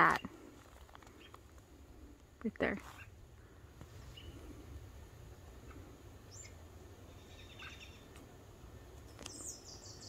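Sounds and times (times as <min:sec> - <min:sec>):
low forest background rumble: 0:00.0 - 0:10.0.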